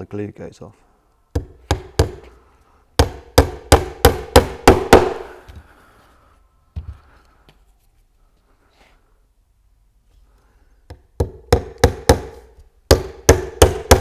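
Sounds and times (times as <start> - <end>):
hammer driving a nail: 1.4 - 2.4, 3.0 - 5.4, 10.9 - 14.0.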